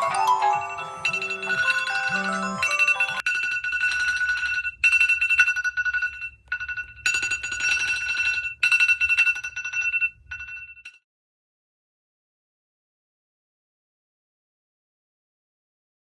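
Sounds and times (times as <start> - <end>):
phone ringtones and alarm clocks: 0.0 - 11.0.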